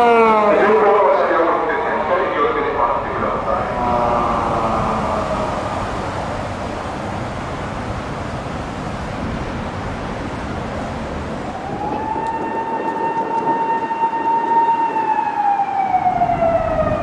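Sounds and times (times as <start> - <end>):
street traffic noise: 0.0 - 17.0
police car siren rising: 3.5 - 7.0, 11.4 - 17.0.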